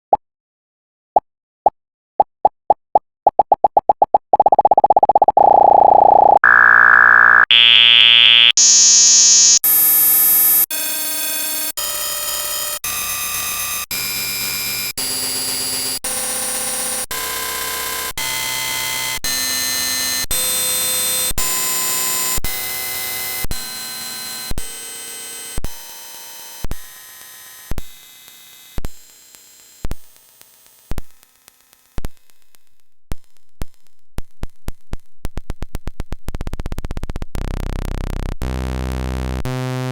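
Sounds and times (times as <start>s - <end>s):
harsh buzzing digital noise: 4.4s - 17.0s.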